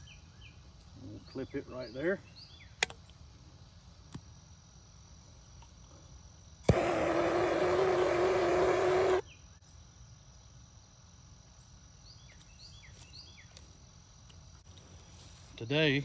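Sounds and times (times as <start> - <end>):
torch flame hissing: 6.6 - 9.2
torch igniter click: 6.6 - 9.2.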